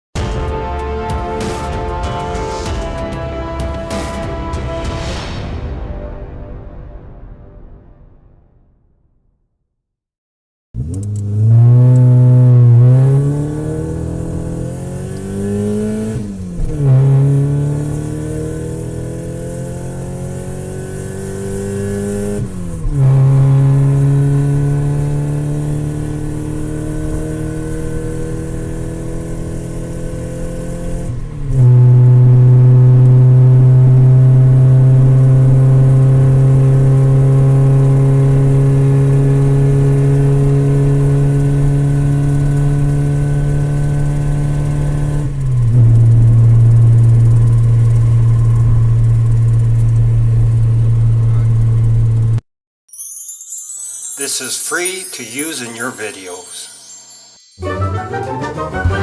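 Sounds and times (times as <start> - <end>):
car engine accelerating: 10.8 - 52.4.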